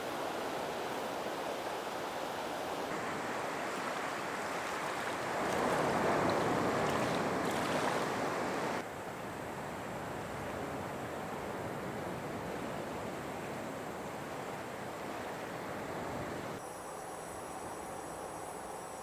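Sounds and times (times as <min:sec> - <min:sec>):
rushing water: 0:00.0 - 0:08.8.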